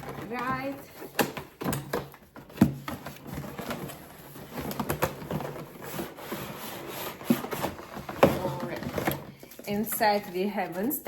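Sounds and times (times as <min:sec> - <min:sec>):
cardboard box being handled: 0:00.0 - 0:11.0.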